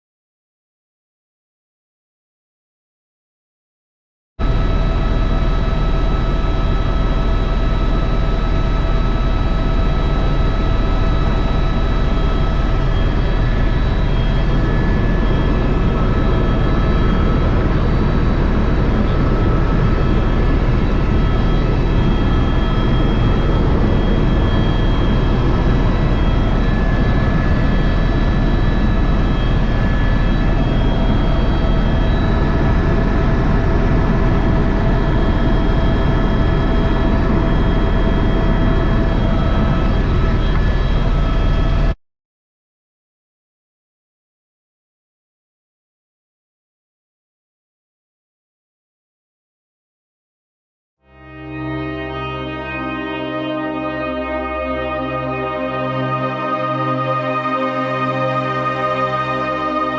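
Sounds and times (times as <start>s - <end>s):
helicopter engine and rotor drone: 4.4s - 42.0s, 53.3s - 59.9s
thin steady whine: 4.4s - 42.0s.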